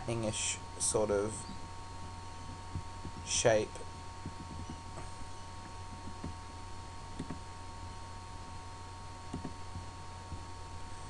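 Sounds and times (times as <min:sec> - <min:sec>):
electrical mains hum: 0:00.0 - 0:11.0
computer mouse clicks: 0:07.1 - 0:07.4, 0:09.3 - 0:09.6.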